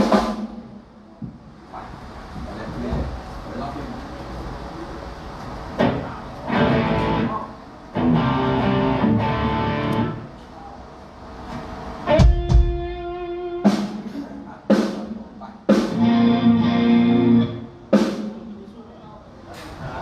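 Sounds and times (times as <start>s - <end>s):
drum kit hits: 0.0s - 0.8s, 12.1s - 18.5s
guitar chords: 5.8s - 7.4s, 8.0s - 10.3s, 12.0s - 13.9s, 15.9s - 18.0s
heavy bass drum hit: 12.1s - 13.0s.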